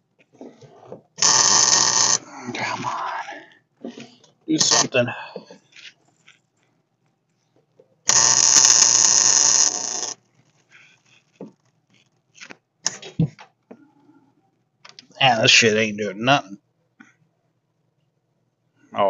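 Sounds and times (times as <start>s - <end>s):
electric welding arc: 1.2s - 2.2s, 8.1s - 10.2s.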